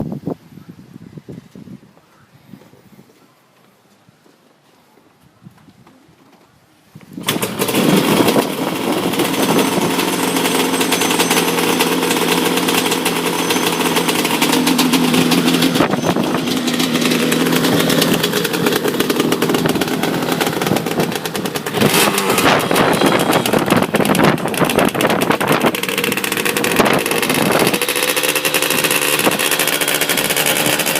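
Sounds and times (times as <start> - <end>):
two-stroke engine revving and idling: 7.2 - 30.9.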